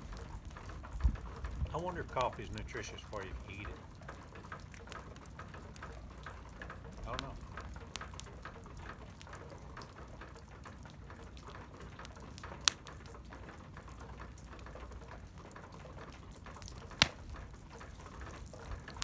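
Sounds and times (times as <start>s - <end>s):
water dripping on metal sheets: 0.0s - 19.0s
sharp ticks: 16.6s - 17.4s.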